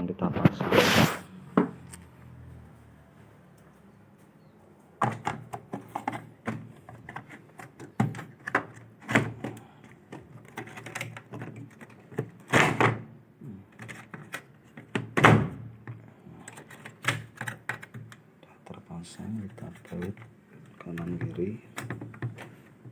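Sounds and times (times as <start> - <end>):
plastic parts clicking and knocking: 5.0 - 18.8, 19.4 - 22.9.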